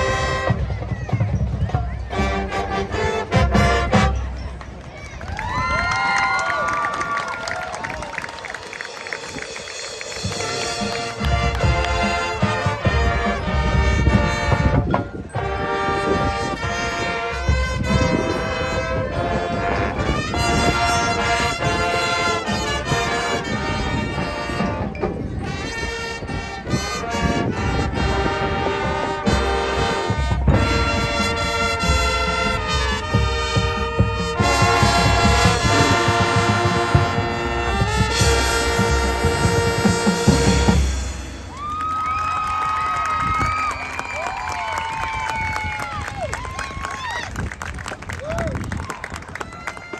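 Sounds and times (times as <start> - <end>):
brass sustained chords: 0.0 - 0.8, 2.1 - 4.7, 9.7 - 41.6
marching drums: 0.0 - 5.6, 8.4 - 25.6, 26.2 - 44.7.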